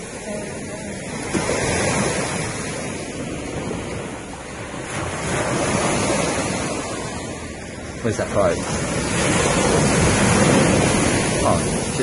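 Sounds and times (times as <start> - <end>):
waves washing on shore: 0.0 - 12.0
wind buffeting microphone: 0.0 - 12.0.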